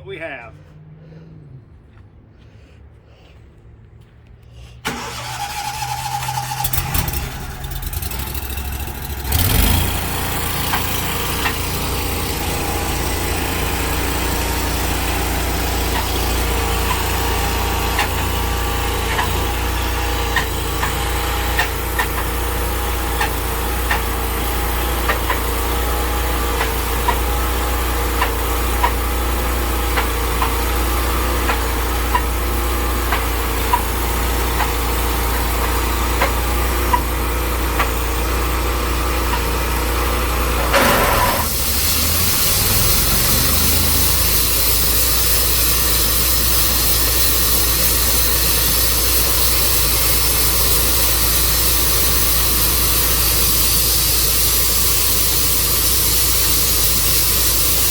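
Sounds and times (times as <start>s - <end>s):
sawmill engine running: 4.8s - 57.9s.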